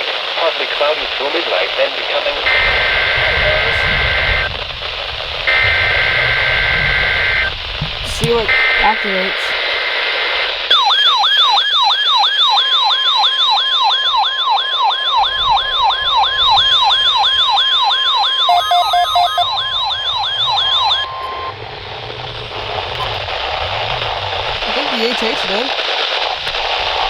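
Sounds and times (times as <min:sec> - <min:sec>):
radio static: 0:00.0 - 0:10.8, 0:16.5 - 0:21.1, 0:22.4 - 0:27.0
steady warning alarm tone: 0:02.4 - 0:21.7
warbling alert siren: 0:10.7 - 0:21.7.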